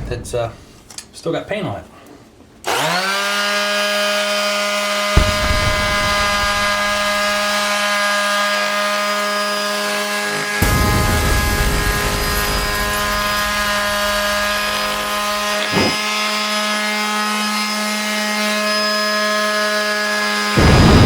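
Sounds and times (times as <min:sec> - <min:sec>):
sander motor whine: 0:09.2 - 0:17.7.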